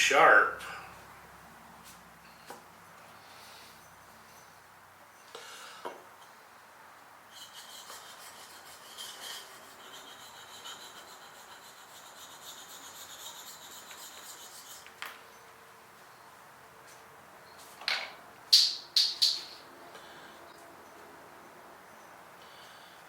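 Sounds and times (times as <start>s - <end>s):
blade scraping on sharpening stone: 7.9s - 14.9s.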